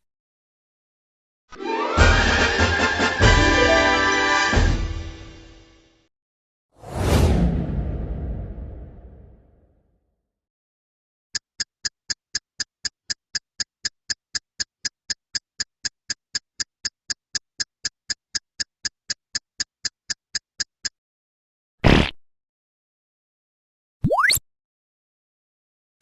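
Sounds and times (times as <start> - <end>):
sharp ticking: 11.4 - 20.9.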